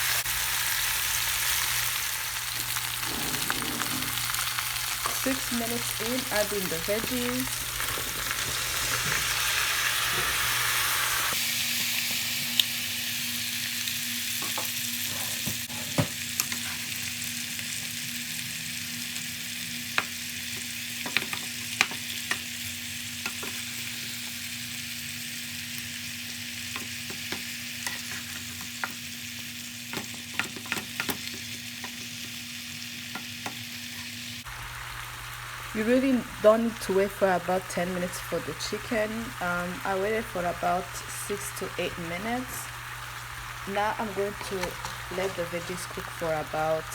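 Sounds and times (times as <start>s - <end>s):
food sizzling in a pan: 0.0s - 46.9s
utensil scraping a pan: 3.0s - 5.2s.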